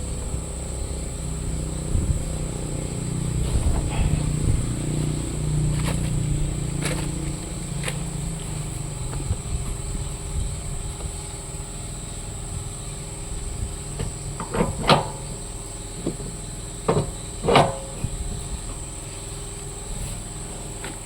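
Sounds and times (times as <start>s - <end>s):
high insect drone: 0.0s - 21.0s
sharp knocks and clanks: 14.0s - 15.4s, 16.0s - 18.2s.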